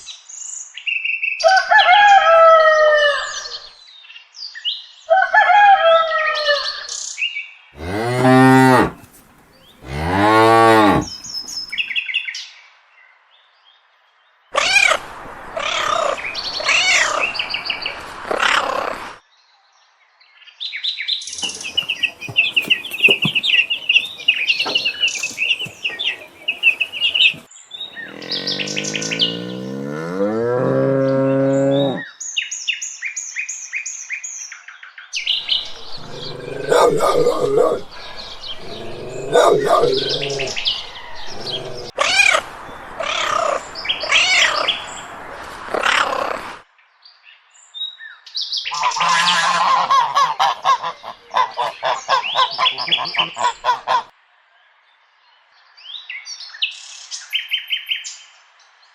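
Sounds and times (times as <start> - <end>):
cows mooing: 7.8 - 11.2, 21.4 - 32.1, 35.4 - 45.8
high bird chirping: 21.4 - 29.9, 35.2 - 45.3.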